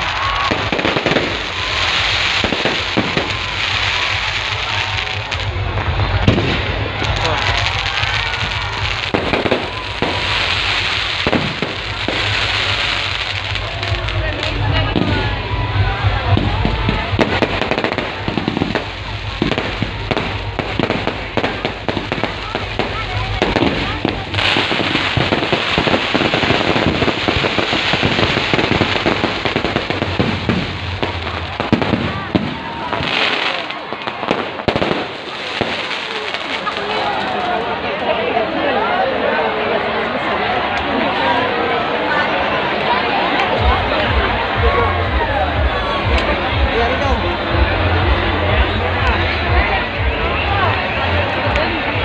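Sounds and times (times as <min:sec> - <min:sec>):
fireworks bangs: 0:00.0 - 0:37.8
fireworks crackling: 0:00.0 - 0:38.4, 0:42.1 - 0:52.0.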